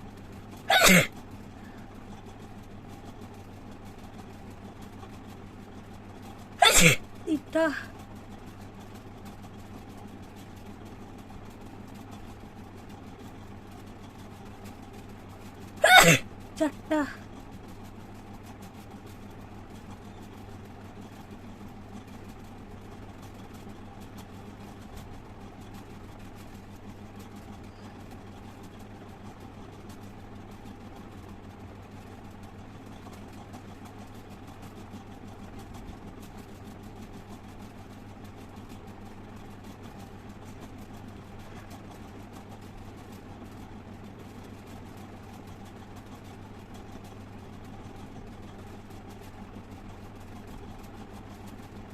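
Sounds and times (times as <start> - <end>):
electric fan humming: 0.6 - 1.9, 6.6 - 8.0, 15.8 - 17.2.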